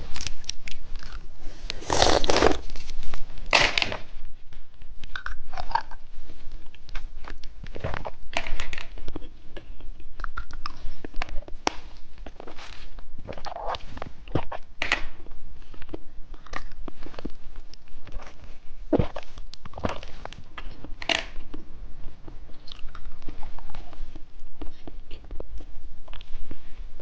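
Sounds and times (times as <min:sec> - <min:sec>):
crunchy bites and chewing: 0:00.0 - 0:02.8.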